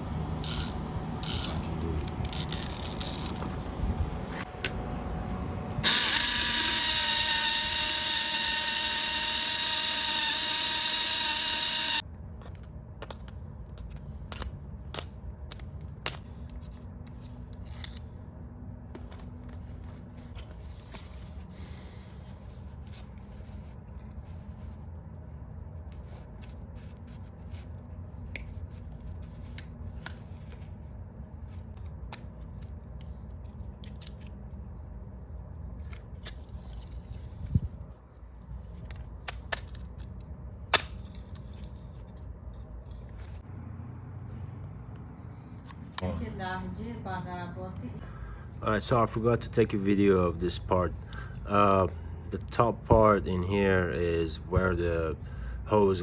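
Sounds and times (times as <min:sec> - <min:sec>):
hand work clicks and scraping: 0:00.4 - 0:04.8, 0:05.8 - 0:34.9, 0:35.5 - 0:43.5
power drill running: 0:05.8 - 0:12.0.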